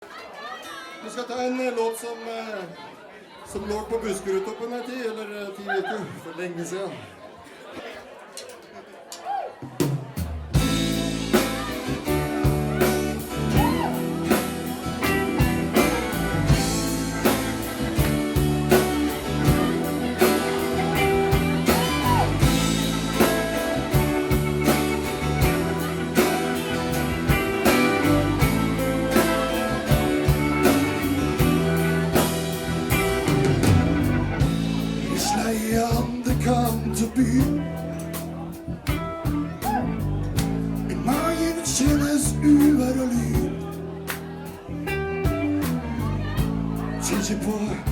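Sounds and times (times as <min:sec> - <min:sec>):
live rock band playing: 0:09.8 - 0:47.9
electric guitar with bent notes: 0:10.5 - 0:47.9.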